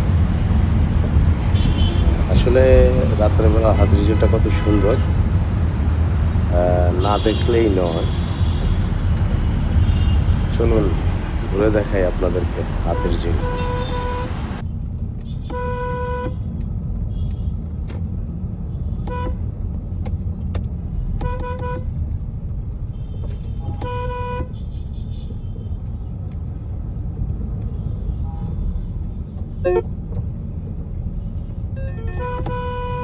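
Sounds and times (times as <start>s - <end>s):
car horns honking: 0.0s - 14.6s, 22.9s - 25.6s, 29.6s - 29.9s, 31.8s - 33.0s
vehicle rumble: 0.0s - 33.0s.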